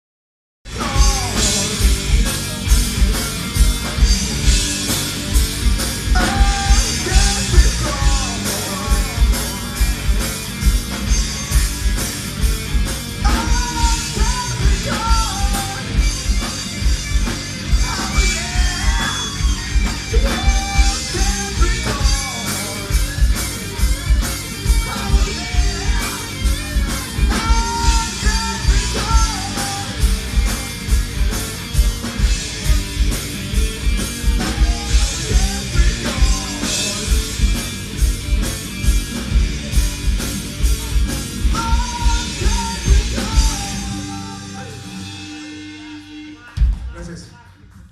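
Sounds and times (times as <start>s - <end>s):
bass guitar: 0.6s - 47.9s
distorted electric guitars: 0.7s - 47.9s
pounding drums with cymbals: 0.7s - 47.9s
singer yelling: 6.0s - 12.0s, 13.2s - 16.7s, 17.6s - 31.2s, 41.4s - 47.2s.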